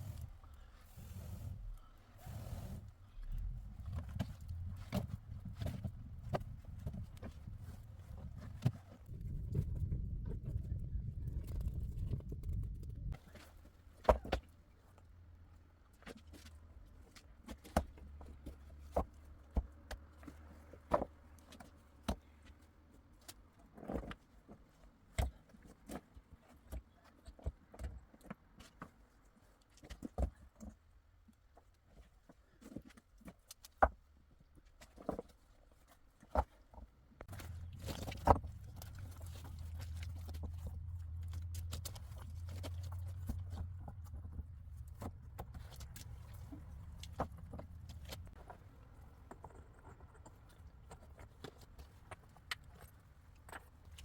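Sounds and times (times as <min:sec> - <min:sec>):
low rumble: 0:00.0 - 0:08.2, 0:09.0 - 0:13.2, 0:37.3 - 0:48.4.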